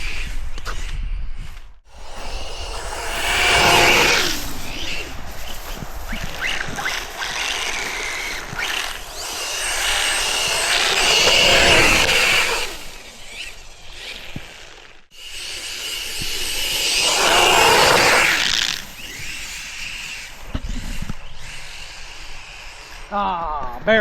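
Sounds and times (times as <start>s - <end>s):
rc car motor whine: 1.9s - 23.2s
paddle tires churning snow: 16.3s - 19.4s.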